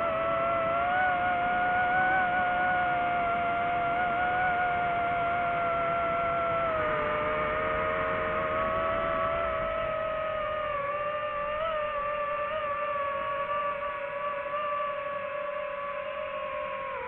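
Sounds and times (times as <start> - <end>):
drone propellers whining: 0.0 - 17.0.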